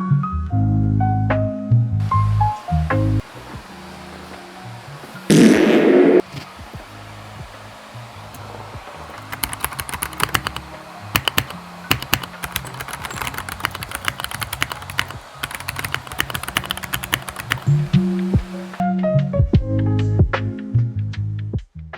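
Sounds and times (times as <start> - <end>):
background music: 0.0 - 21.6
mechanical keyboard key clicks: 9.3 - 17.7.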